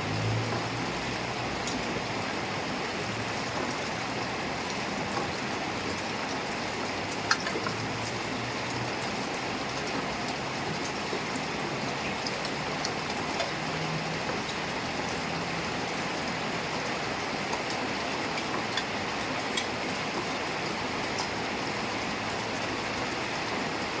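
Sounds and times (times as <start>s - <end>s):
sharp drip clicks: 4.6s - 23.1s.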